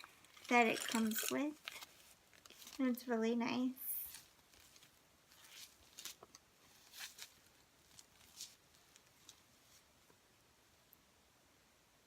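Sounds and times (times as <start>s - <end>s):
packaging rustling: 0.0s - 3.0s, 4.0s - 9.9s.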